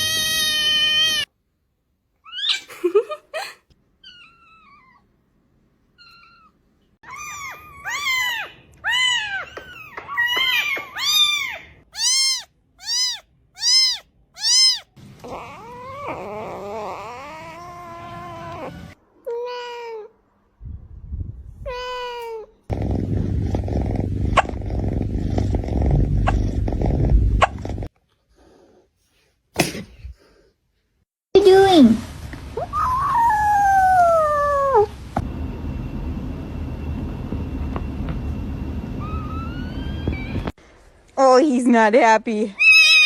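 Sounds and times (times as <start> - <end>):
kittens mewing: 6.0 - 20.1.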